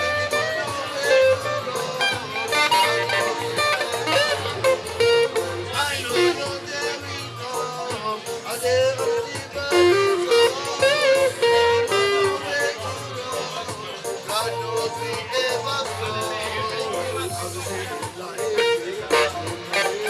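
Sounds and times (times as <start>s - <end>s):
repeating bass pattern: 0.0s - 7.6s
guitar lines: 0.0s - 17.2s, 18.0s - 20.0s.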